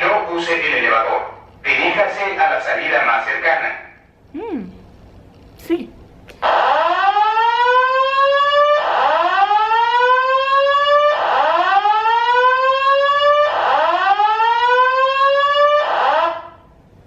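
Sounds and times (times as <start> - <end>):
spoken evacuation messages: 0.0 - 4.7
fire alarm rising whoop: 6.4 - 16.7.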